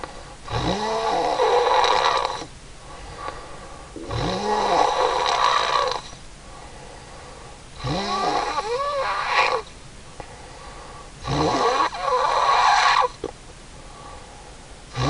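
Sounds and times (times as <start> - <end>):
quiet breathing: 0.0 - 0.5, 2.4 - 7.8, 10.1 - 11.2, 13.7 - 14.9
woman snoring: 0.5 - 2.5, 4.0 - 6.2, 7.8 - 9.7, 11.2 - 13.2.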